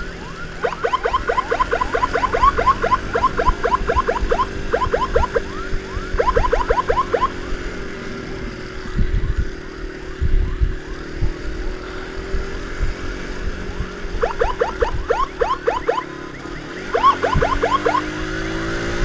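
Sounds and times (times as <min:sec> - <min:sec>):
electronic siren chirps: 0:00.0 - 0:07.6, 0:14.1 - 0:18.3
engine hum: 0:00.0 - 0:19.0.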